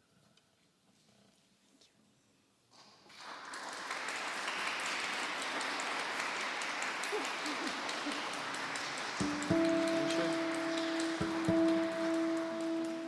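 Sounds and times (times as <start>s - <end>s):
audience applauding: 3.1s - 13.0s
music with sustained notes: 9.2s - 13.0s.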